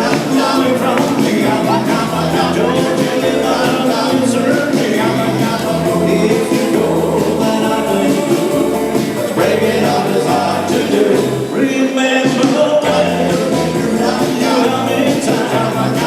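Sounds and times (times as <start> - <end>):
live rock and roll band: 0.0 - 16.0
person singing: 0.0 - 16.0.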